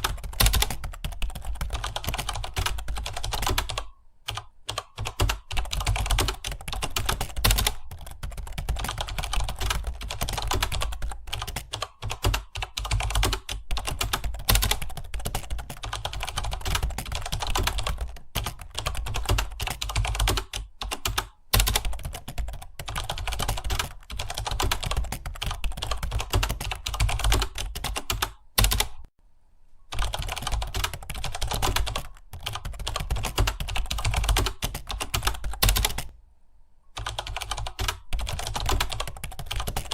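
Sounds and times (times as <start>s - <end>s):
fast typing on keyboard: 0.0s - 29.1s, 29.9s - 36.1s, 37.0s - 39.9s.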